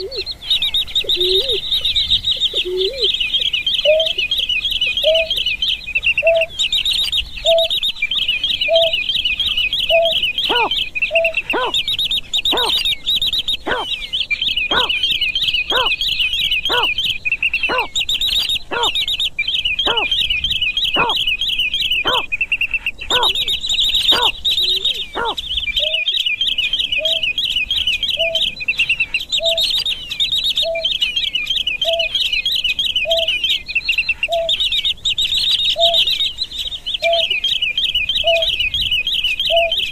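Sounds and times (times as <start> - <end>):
bird low hooting calls: 0.0 - 39.9
high twittering bird chatter: 0.0 - 39.9.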